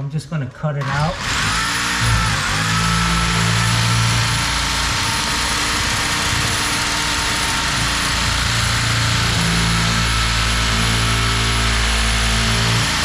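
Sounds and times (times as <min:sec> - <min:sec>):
power tool motor whining: 0:00.8 - 0:13.0.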